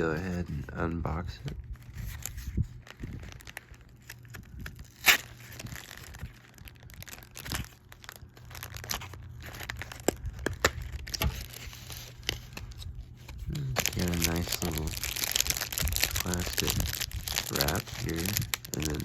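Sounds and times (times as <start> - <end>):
plastic wrap crinkling and tearing: 0.0 - 19.0.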